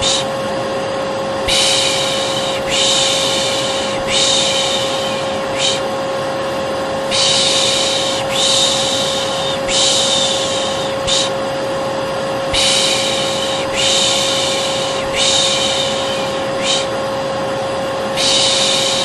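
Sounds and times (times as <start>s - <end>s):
person shushing: 0.0s - 0.3s, 1.5s - 5.9s, 7.1s - 11.4s, 12.5s - 17.0s, 18.2s - 19.0s
vacuum cleaner whining: 0.0s - 19.0s.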